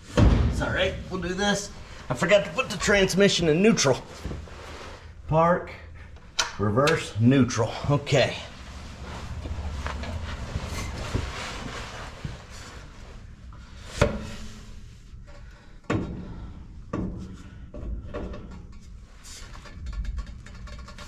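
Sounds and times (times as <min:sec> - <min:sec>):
metal knocks and clunks: 0:00.0 - 0:01.3
metal scraping and handling: 0:08.2 - 0:13.3.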